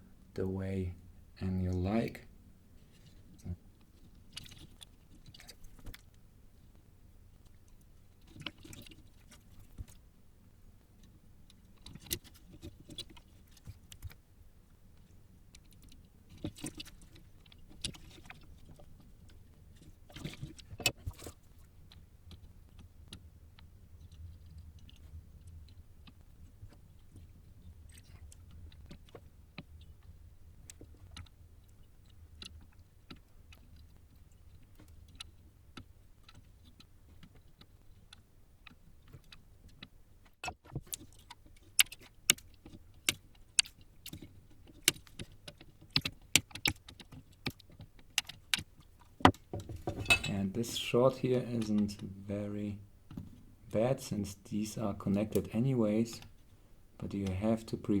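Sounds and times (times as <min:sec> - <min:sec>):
low steady hum: 0:00.0 - 0:45.2, 0:48.4 - 0:58.0
small clicks and taps: 0:14.9 - 0:50.2.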